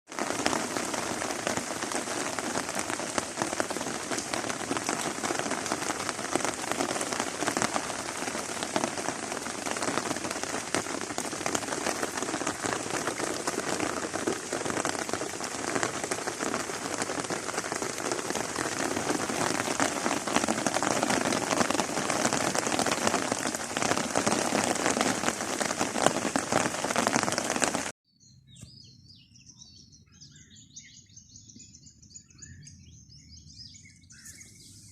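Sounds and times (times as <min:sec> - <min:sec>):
heavy rain falling: 0:00.1 - 0:28.0
faint bird chirps: 0:28.1 - 0:34.9.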